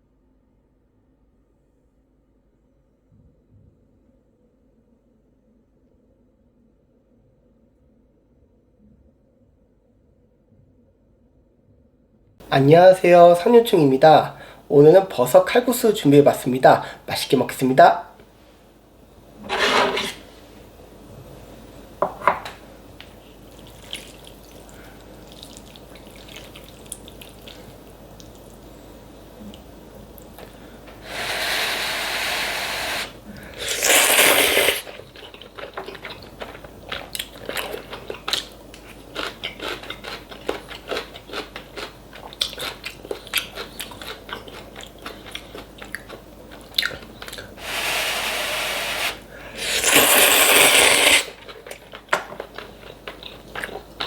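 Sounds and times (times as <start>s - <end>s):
chewing: 23.5s - 28.6s, 33.6s - 47.6s, 49.9s - 54.0s
noodles slurped: 31.0s - 36.3s, 47.6s - 51.8s.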